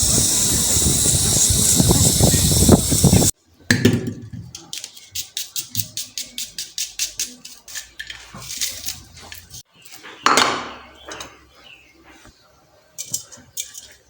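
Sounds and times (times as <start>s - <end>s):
kitchen utensils clicking: 4.6s - 10.0s, 13.0s - 14.0s.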